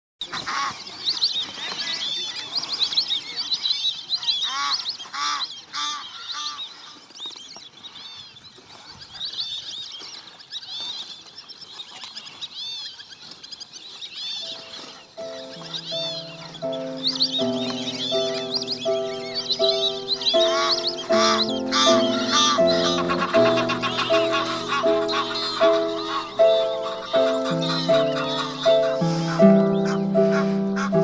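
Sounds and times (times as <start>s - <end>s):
birds honking: 0.2s - 1.0s, 4.1s - 7.0s, 14.1s - 31.0s
birds chirping: 0.2s - 31.0s.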